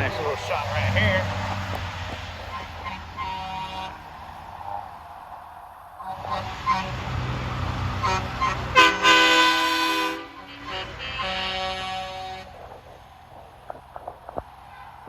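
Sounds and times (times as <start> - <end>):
truck engines rumbling: 0.0 - 15.0
truck air horn blast: 2.4 - 4.1, 6.0 - 12.8, 14.7 - 15.0.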